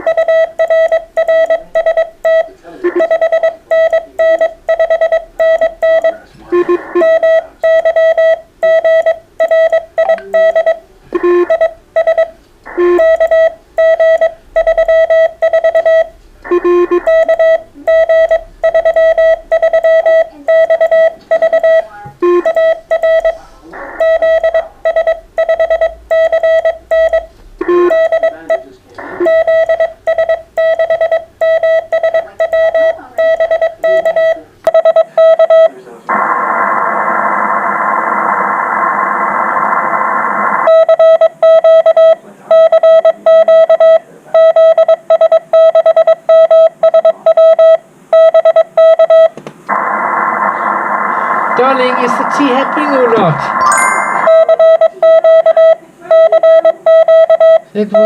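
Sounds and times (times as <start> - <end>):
morse code beeps: 0.0 - 35.7, 40.6 - 49.4, 51.8 - 58.0
faint morse tones: 0.0 - 35.8, 51.6 - 58.0.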